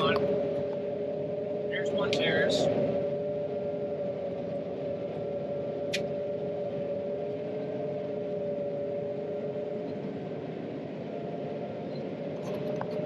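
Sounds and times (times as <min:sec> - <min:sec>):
combine harvester drone: 0:00.0 - 0:13.0.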